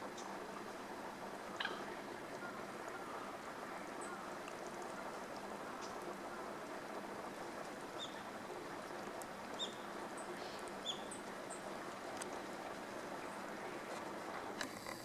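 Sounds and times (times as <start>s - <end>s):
low background rush: 0.0s - 15.0s
small birds chirping: 8.0s - 8.3s, 9.6s - 11.7s.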